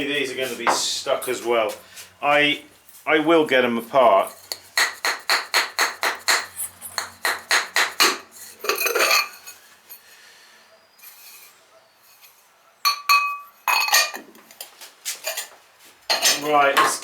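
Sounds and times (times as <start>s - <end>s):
ceramic pots clinking: 4.3s - 9.7s, 12.2s - 14.3s, 15.2s - 15.5s, 16.1s - 17.0s.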